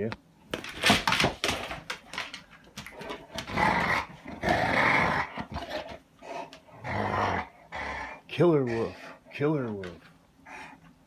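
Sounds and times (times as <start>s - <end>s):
dog growling: 2.9s - 9.3s.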